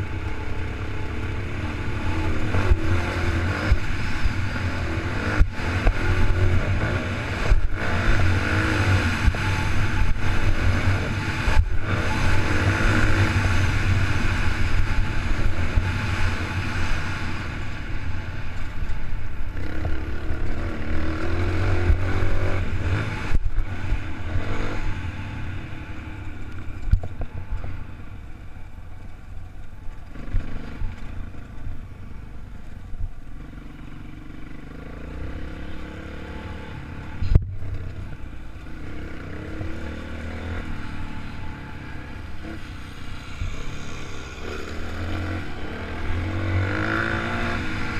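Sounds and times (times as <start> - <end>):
motocross bike engine revving: 0.0 - 18.0, 19.4 - 26.0, 34.4 - 47.9.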